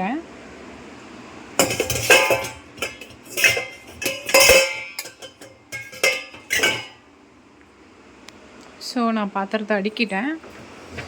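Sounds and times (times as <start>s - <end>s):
metal dishes clanking in a rack: 1.6s - 7.0s.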